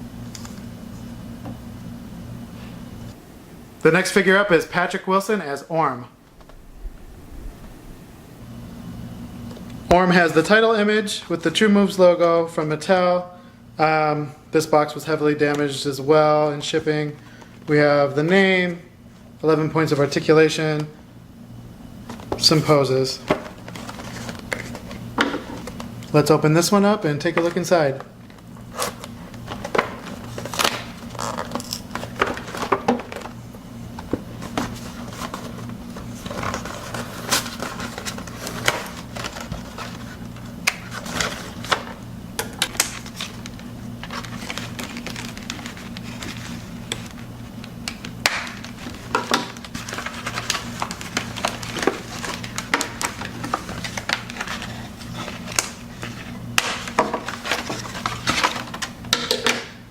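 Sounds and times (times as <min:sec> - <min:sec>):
steady low hum: 0:00.0 - 0:59.9
cardboard and plastic packaging rustling: 0:22.0 - 0:59.5.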